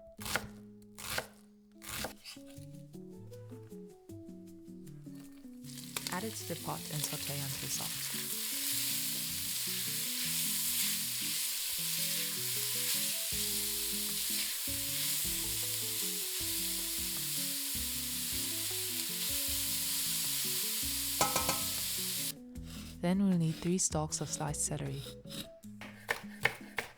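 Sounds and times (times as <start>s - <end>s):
onion sizzling in oil: 5.6s - 22.4s.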